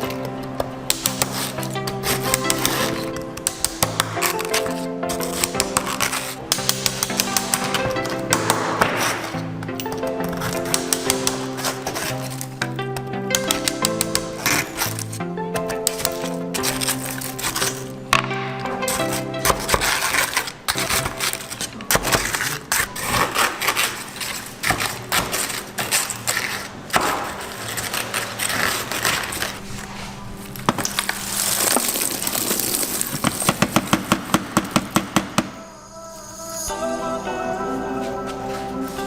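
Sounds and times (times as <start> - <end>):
kitchen clicks and knocks: 0.0 - 29.6
faint background music: 0.0 - 39.0.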